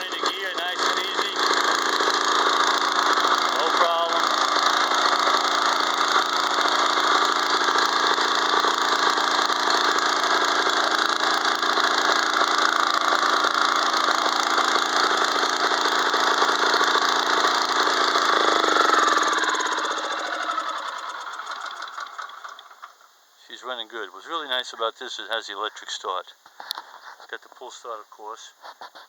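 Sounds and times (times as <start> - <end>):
snowblower engine running: 0.0 - 23.0.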